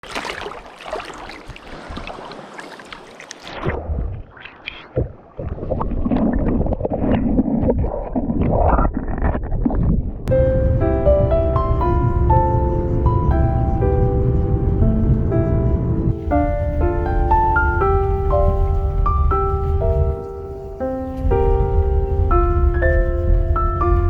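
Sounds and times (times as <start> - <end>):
creek water splashing: 0.0 - 6.0.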